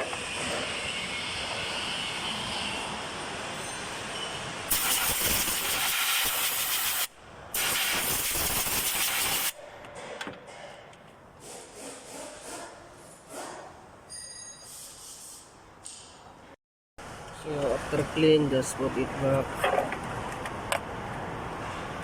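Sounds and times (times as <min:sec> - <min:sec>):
aerosol spray hissing: 0:04.7 - 0:09.5.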